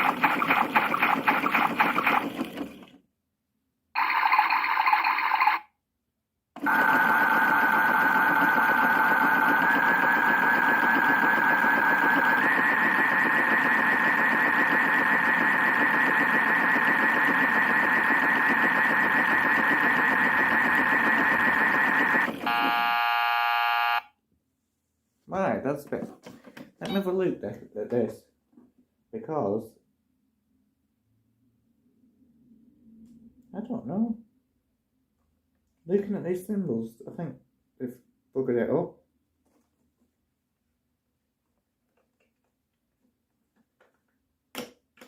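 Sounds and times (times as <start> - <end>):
toy washing machine motor whine: 0.0 - 3.0, 4.0 - 5.7, 6.6 - 24.0
buzzer: 22.0 - 24.2.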